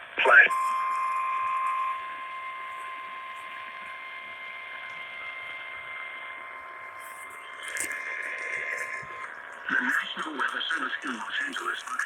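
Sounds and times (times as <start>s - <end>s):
radio static hiss: 0.0s - 12.0s
steady alarm tone: 0.5s - 11.8s
faint crackles: 7.0s - 12.0s.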